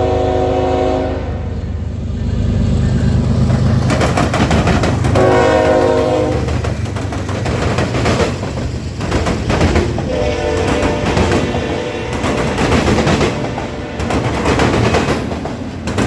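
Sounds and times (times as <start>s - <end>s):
train horn chord: 0.0s - 1.8s, 5.1s - 6.5s, 10.1s - 14.8s
low engine rumble: 0.0s - 16.0s
wheel clatter on rails: 3.3s - 16.0s.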